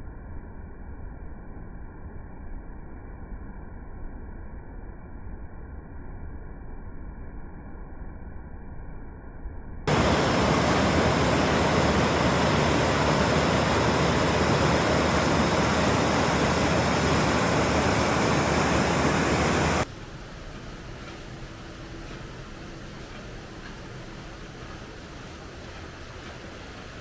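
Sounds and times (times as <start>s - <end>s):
waterfall rushing over rock: 9.9s - 19.8s
quieter rush of water: 9.9s - 27.0s.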